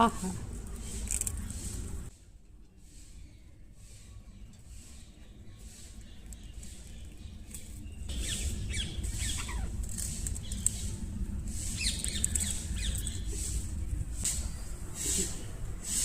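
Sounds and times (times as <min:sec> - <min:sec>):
parrot chirping and squeaking: 0:08.1 - 0:10.7.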